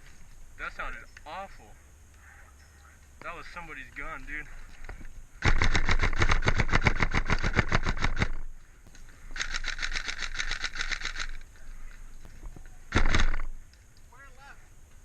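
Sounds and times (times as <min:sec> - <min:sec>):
airsoft rifle firing full-auto: 0:05.4 - 0:08.4, 0:09.4 - 0:11.4, 0:12.9 - 0:13.5.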